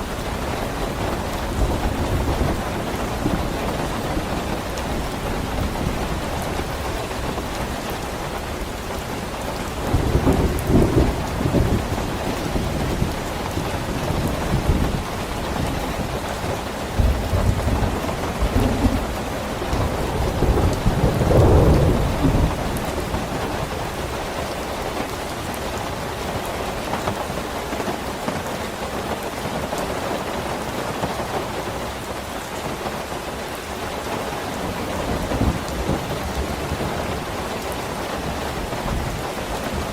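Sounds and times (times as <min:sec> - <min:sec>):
thunder rumbling: 0:00.0 - 0:24.3
heavy rain falling: 0:00.0 - 0:39.9.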